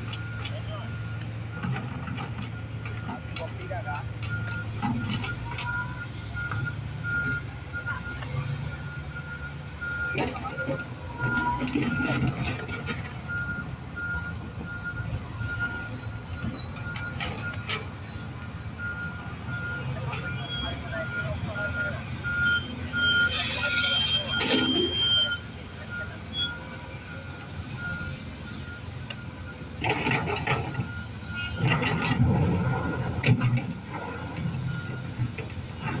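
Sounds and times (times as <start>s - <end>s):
excavator diesel engine under load: 0.0s - 36.0s.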